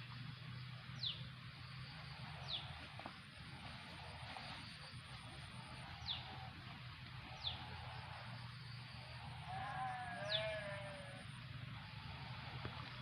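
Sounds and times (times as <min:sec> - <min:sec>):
faint low hum: 0:00.0 - 0:13.0
longer bird call: 0:04.0 - 0:06.6, 0:07.2 - 0:12.6.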